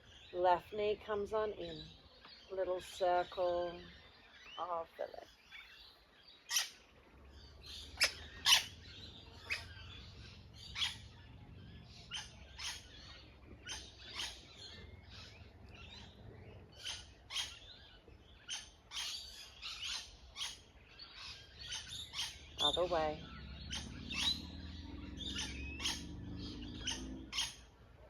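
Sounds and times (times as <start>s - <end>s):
wild birds chirping: 0.0s - 28.0s
faint low hum: 6.9s - 28.0s.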